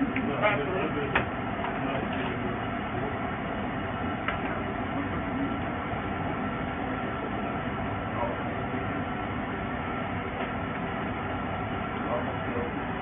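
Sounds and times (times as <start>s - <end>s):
kitchen equipment humming: 0.0s - 13.0s.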